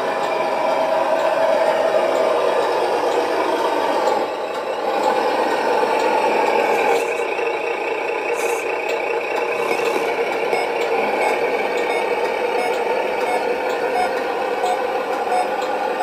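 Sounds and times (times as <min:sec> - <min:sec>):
simulated diesel engine from small speaker: 0:00.0 - 0:16.0.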